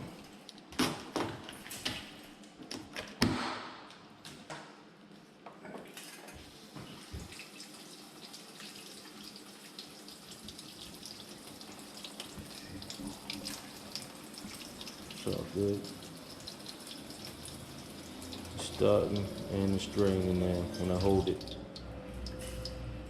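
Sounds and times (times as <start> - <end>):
water hissing into dishwasher: 6.6 - 21.6.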